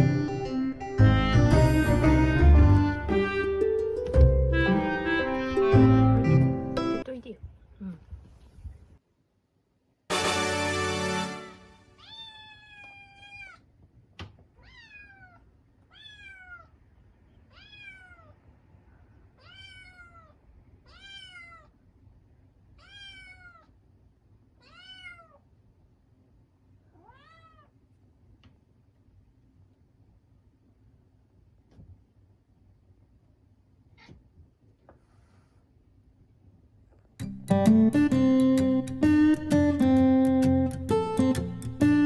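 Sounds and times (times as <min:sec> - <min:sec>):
cat meowing: 0:12.0 - 0:13.6, 0:14.6 - 0:16.8, 0:17.5 - 0:18.4, 0:19.4 - 0:21.8, 0:22.8 - 0:23.7, 0:24.6 - 0:25.4, 0:26.9 - 0:27.7.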